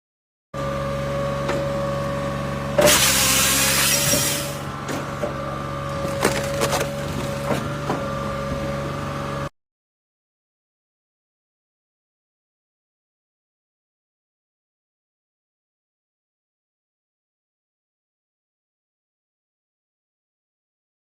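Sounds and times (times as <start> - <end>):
electric chainsaw motor whine: 0.6 - 4.8
chainsaw cutting wood: 2.6 - 8.1.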